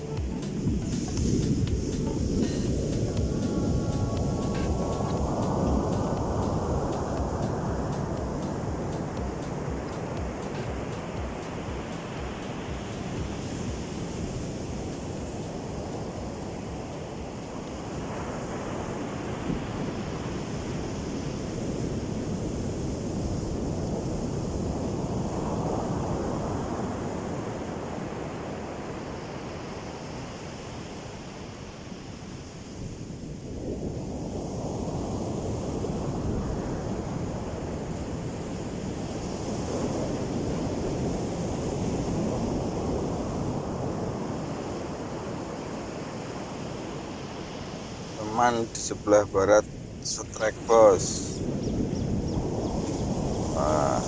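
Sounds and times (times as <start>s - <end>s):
waves breaking on beach: 0.0s - 54.0s
wind buffeting microphone: 51.0s - 54.0s.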